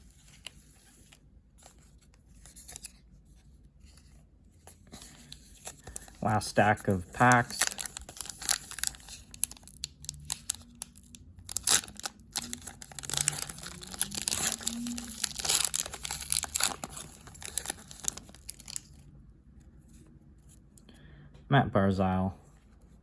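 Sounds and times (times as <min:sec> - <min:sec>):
foil wrappers tearing and crinkling: 0:05.8 - 0:19.0.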